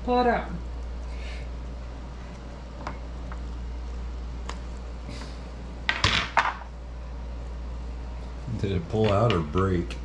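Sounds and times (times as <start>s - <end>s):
steady low hum: 0.0s - 10.0s
kitchenware clattering: 9.0s - 9.7s.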